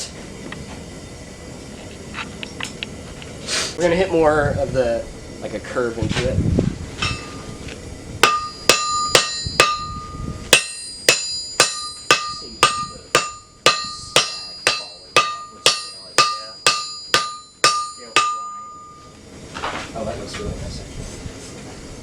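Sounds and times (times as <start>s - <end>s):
hammer striking steel on anvil: 7.0s - 7.5s, 8.2s - 19.1s.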